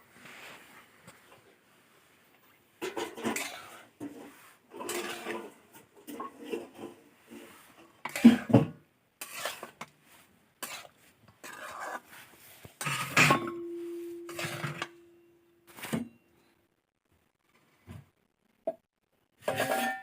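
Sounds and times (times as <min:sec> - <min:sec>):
metal dishes clattering: 0:02.8 - 0:07.0, 0:08.0 - 0:09.7, 0:12.8 - 0:15.1, 0:19.4 - 0:20.0.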